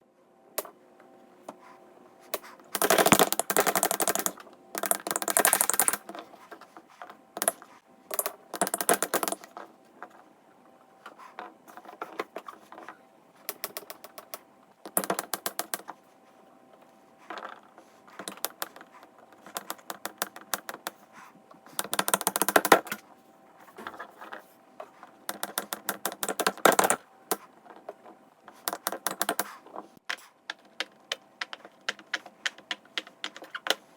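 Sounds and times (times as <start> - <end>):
plastic fidget toys clicking: 2.8 - 6.1, 7.4 - 9.5.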